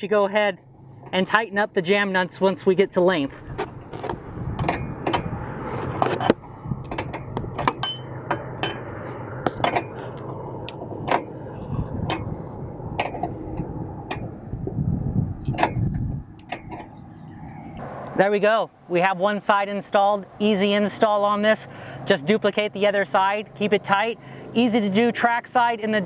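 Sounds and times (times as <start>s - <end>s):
low steady hum: 0.0s - 26.0s
wrench clinking on nuts: 6.9s - 8.8s.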